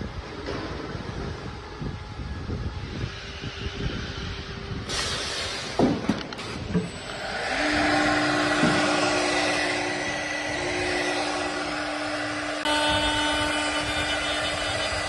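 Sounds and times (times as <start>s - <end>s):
spindle whine with hiss: 6.6s - 15.0s
woodworking router running: 7.0s - 15.0s.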